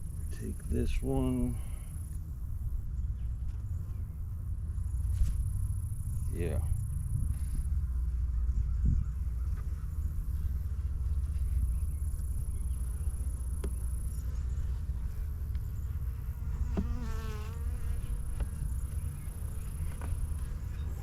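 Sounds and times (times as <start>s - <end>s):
honeybees humming around hive: 9.2s - 21.0s
bee buzzing past microphone: 16.0s - 18.6s.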